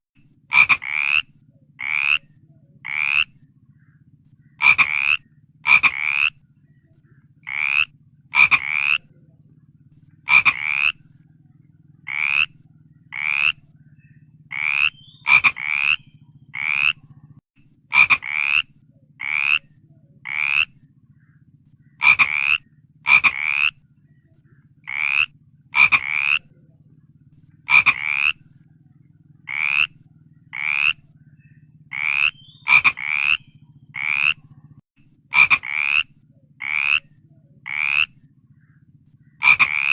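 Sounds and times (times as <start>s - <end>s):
low hum: 0.2s - 39.9s
frog croaking: 0.5s - 6.4s, 7.4s - 23.9s, 24.5s - 39.9s.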